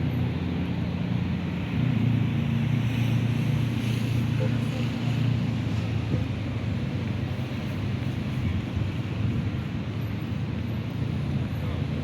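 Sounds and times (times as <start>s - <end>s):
wind noise on microphone: 5.6s - 12.0s.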